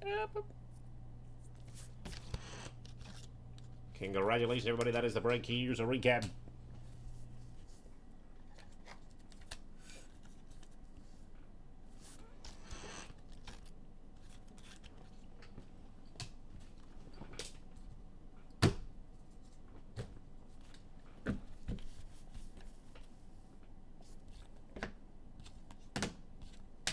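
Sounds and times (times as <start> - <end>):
brushing swish of cards: 1.4 - 3.2.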